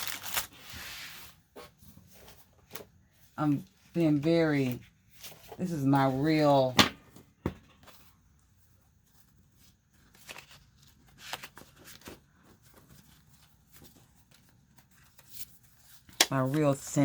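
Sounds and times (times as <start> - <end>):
packaging crinkling: 0.0 - 0.8
paper and packaging rustling: 0.0 - 6.8, 7.8 - 17.0.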